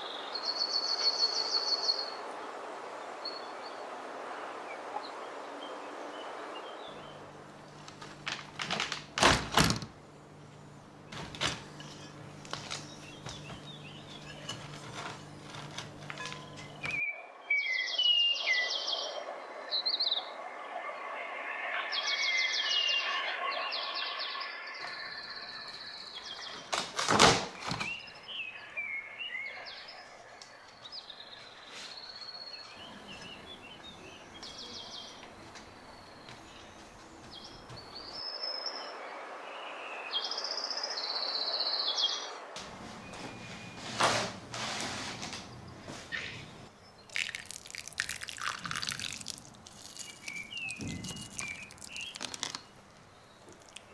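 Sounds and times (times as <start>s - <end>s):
birds trilling and chirping: 6.9s - 17.0s, 27.5s - 38.2s, 42.6s - 47.3s.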